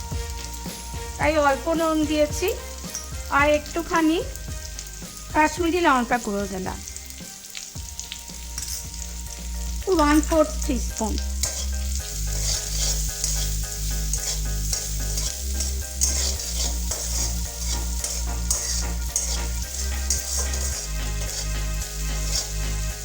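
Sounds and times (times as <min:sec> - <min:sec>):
vegetables sizzling in oil: 0:00.0 - 0:23.0
spoon clicking and scraping pan: 0:02.5 - 0:03.2, 0:08.6 - 0:09.0, 0:11.2 - 0:22.6.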